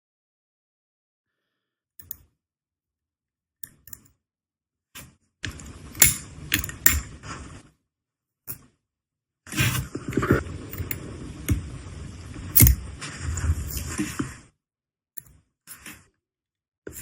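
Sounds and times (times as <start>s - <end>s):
clicks and scraping of metal parts: 5.0s - 7.2s.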